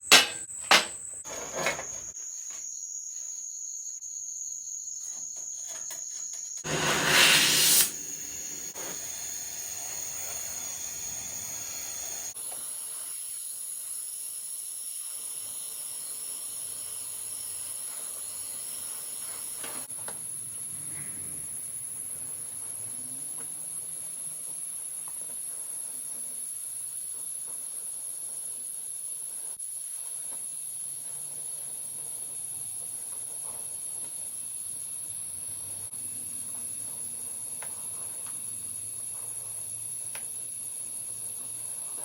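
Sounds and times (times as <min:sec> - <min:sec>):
torch igniting whoosh: 0:06.6 - 0:12.4
gas torch hissing: 0:06.6 - 0:20.4.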